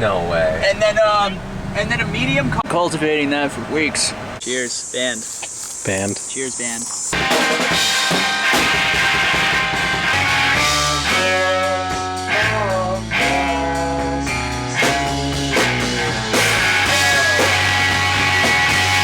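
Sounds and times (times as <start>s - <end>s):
rock music: 7.1s - 19.0s
electric guitar bending notes: 7.2s - 19.0s
steady bass line: 7.2s - 19.0s.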